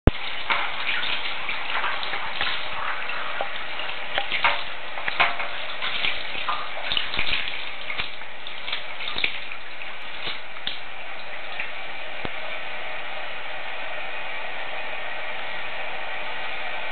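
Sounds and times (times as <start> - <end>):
small splashes: 0.0 - 11.8
water running into bathtub: 0.0 - 12.6.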